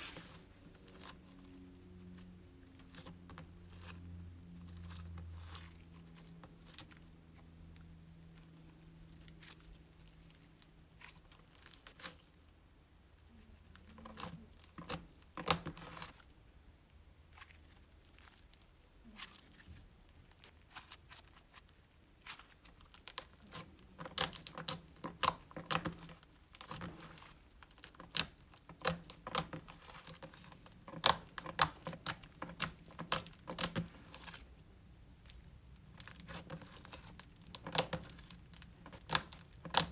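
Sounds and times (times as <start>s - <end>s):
slime squished by hand: 17.2s - 39.9s.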